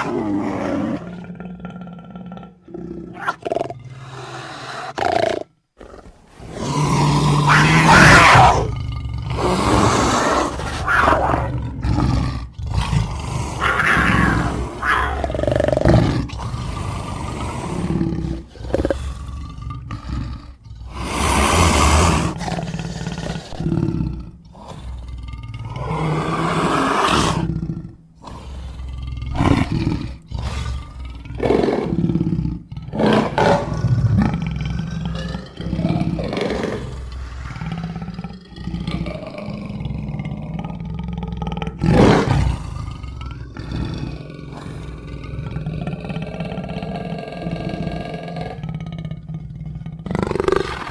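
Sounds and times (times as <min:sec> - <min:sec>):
big cat growls and roars: 0:00.0 - 0:50.9.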